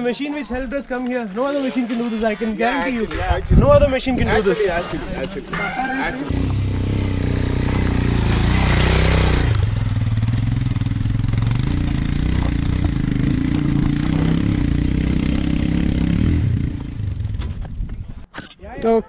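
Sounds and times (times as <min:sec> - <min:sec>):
motorcycle engine running: 0:06.3 - 0:18.0.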